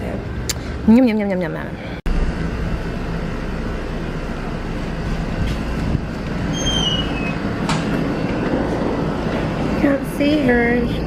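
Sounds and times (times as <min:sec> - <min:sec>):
vehicle rumble: 0:00.0 - 0:11.0
high falling squeal: 0:06.4 - 0:07.5.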